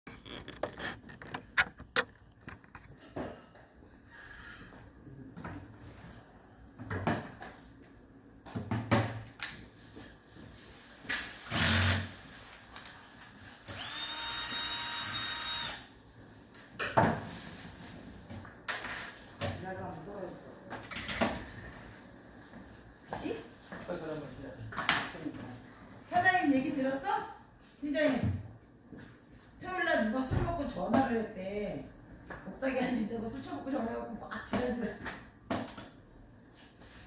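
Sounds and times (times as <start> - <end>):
electric drill running: 11.4 - 12.1, 13.7 - 15.9.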